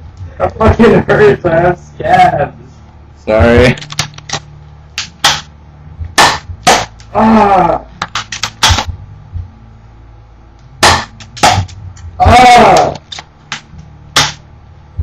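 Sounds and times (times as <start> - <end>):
bb gun shots: 5.0 - 5.5, 6.2 - 7.0, 8.1 - 8.9, 10.8 - 11.8, 14.2 - 14.4.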